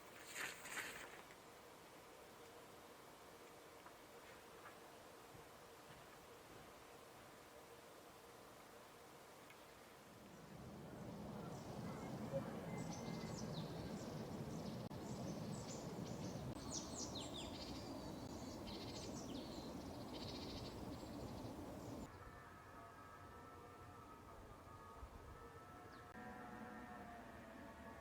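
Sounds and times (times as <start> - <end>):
steady outdoor hush: 0.0 - 23.2
small birds chirping: 11.4 - 22.1.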